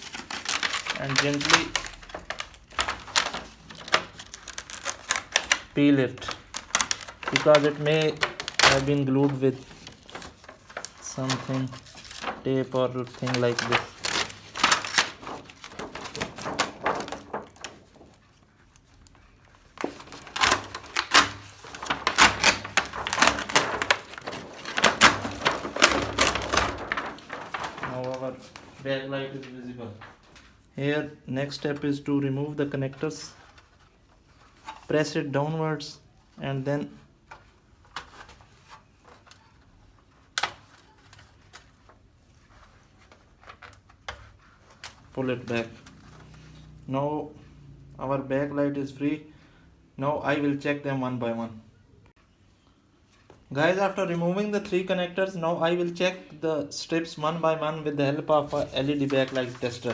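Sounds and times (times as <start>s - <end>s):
plastic sheet crackling: 0.0s - 30.7s, 56.9s - 59.9s.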